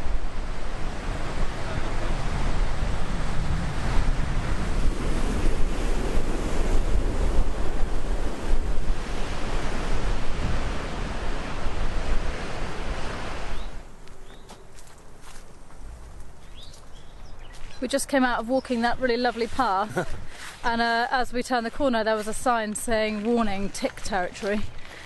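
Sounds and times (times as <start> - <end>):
rushing water: 0.0 - 14.0
wind buffeting microphone: 0.0 - 15.2.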